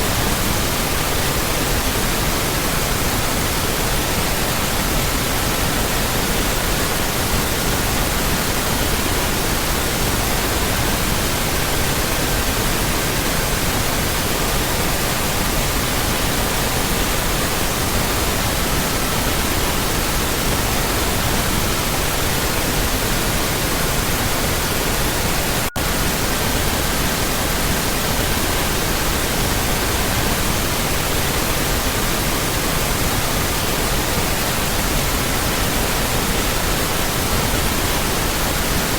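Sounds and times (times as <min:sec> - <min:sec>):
pink noise hiss: 0:00.0 - 0:38.9.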